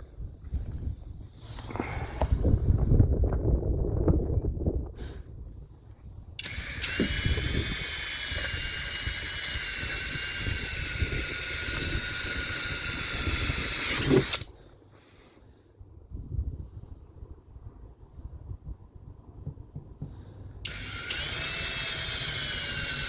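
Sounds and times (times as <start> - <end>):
power drill whining: 6.4 - 14.5, 20.6 - 23.0
knock: 19.4 - 20.2.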